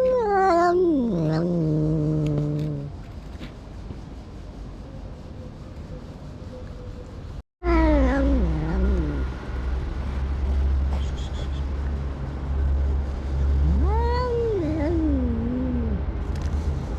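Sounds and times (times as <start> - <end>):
cat meowing: 0.0 - 2.9, 7.6 - 9.3, 13.6 - 16.0.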